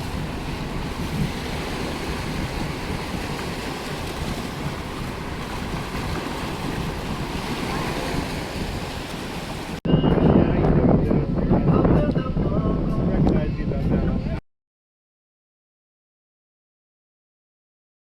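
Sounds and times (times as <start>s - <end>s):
surf washing on beach: 0.0s - 9.8s
wind buffeting microphone: 0.0s - 14.4s.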